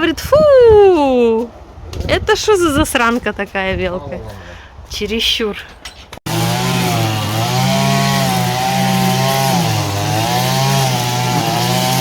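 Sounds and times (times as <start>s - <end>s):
lawn mower engine mowing: 6.3s - 12.0s.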